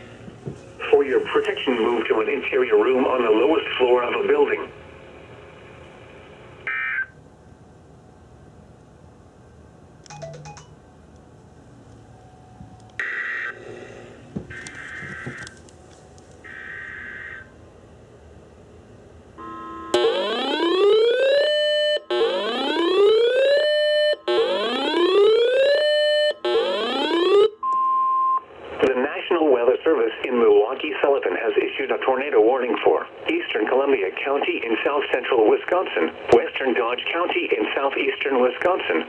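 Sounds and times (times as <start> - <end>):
receiver hiss: 0.0 - 6.8, 14.5 - 17.5
electronic siren wail: 13.0 - 13.6, 14.5 - 15.5, 16.4 - 17.5, 19.4 - 27.6.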